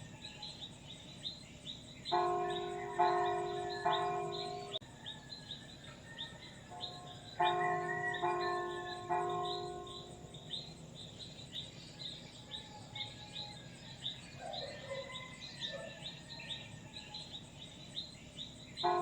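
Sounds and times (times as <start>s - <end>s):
church bell ringing: 2.1s - 4.8s, 6.7s - 10.8s, 18.8s - 19.0s.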